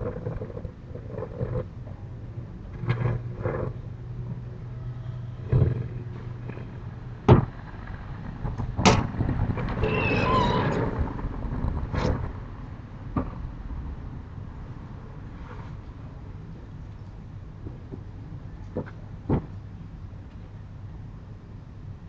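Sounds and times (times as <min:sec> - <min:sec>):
low rumble: 0:00.0 - 0:18.6
doors banging and thudding: 0:07.3 - 0:07.6, 0:08.6 - 0:11.2
short squeak: 0:09.8 - 0:11.0.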